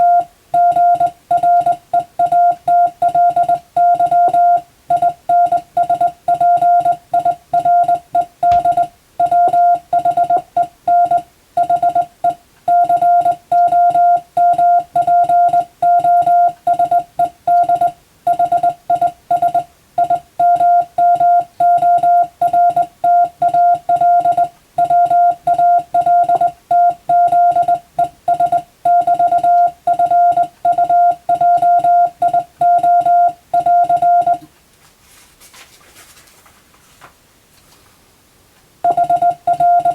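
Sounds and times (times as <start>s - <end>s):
morse code beeps: 0.0s - 34.5s, 38.8s - 39.9s.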